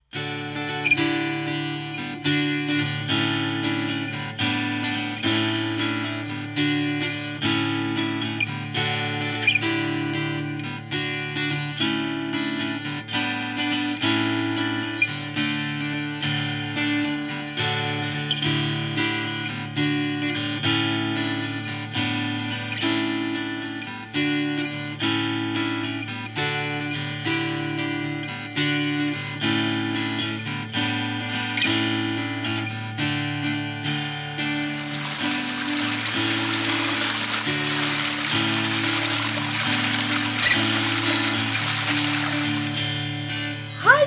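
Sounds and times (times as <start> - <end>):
acoustic guitar strumming: 33.8 - 43.6.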